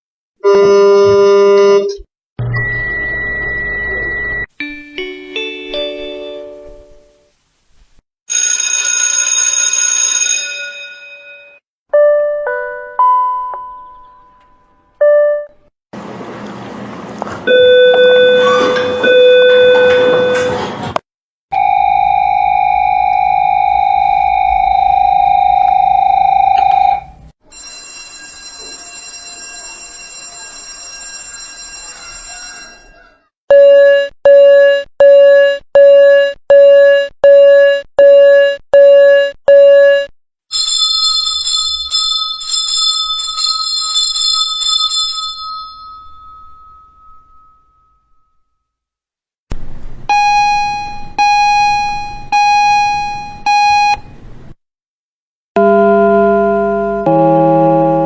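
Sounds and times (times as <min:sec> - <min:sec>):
school bell ringing: 0:21.6 - 0:33.2, 0:40.5 - 0:48.2
struck bell tones: 0:41.6 - 0:48.6.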